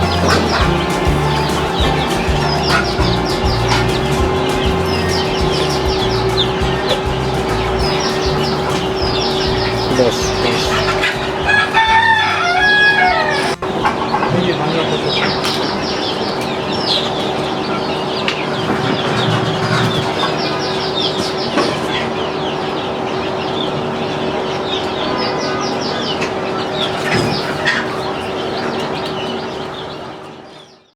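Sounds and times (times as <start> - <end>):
steady machine hum: 0.0 - 13.9
chickens clucking: 0.0 - 30.8.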